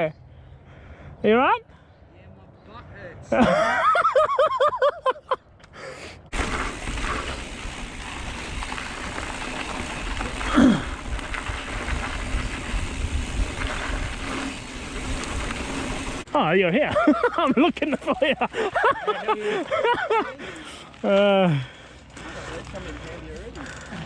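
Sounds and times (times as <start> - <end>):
wind buffeting: 6.3 - 16.3
bike tyre rumble on trail: 6.3 - 24.0.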